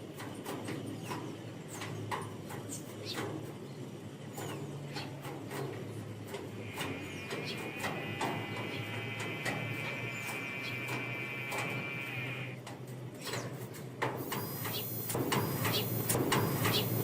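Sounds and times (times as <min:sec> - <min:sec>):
small birds chirping: 0:06.6 - 0:12.6, 0:13.2 - 0:17.0
steady held tone: 0:06.6 - 0:12.6, 0:14.2 - 0:17.0.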